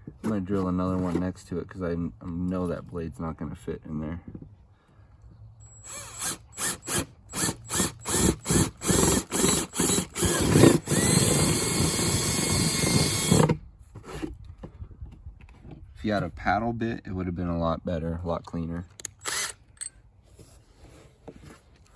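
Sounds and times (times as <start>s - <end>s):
electric drill boring through plastic: 5.6s - 13.6s, 19.2s - 19.6s.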